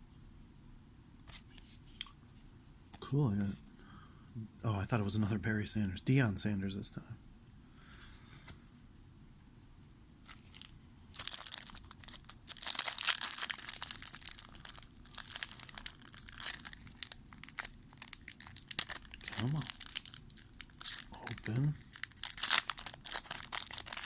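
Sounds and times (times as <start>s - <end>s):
wrapper crinkling and tearing: 10.2s - 24.0s.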